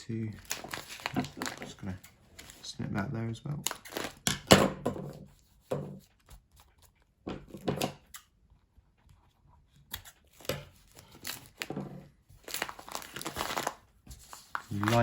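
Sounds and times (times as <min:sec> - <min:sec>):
plastic bag crinkling: 0:00.2 - 0:02.7, 0:03.7 - 0:04.3, 0:10.9 - 0:15.0
duct tape ripping: 0:03.6 - 0:04.3.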